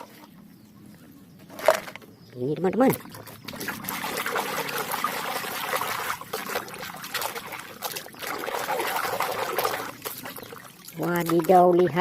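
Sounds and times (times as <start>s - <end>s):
water trickling and splashing: 2.6s - 12.0s.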